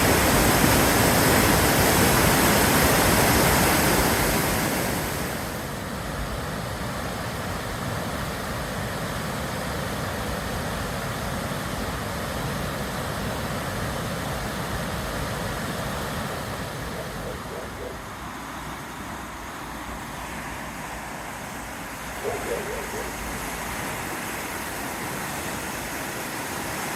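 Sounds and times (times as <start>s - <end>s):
river rushing: 0.0s - 26.9s
road traffic rumble: 16.7s - 25.0s.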